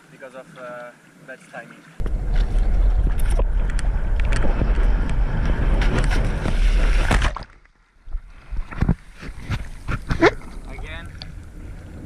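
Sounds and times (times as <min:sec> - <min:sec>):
water splashing: 0:00.0 - 0:12.0
wind buffeting microphone: 0:02.0 - 0:07.2.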